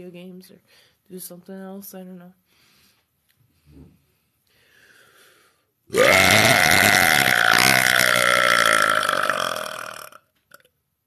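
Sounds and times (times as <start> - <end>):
woman burping loudly: 5.9 - 10.7.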